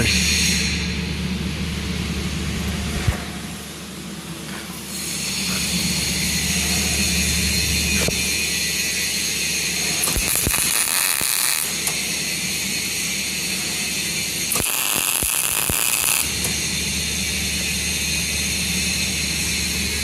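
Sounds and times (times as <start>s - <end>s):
steady hum: 0.0s - 20.0s
welding arc crackling: 7.9s - 17.8s.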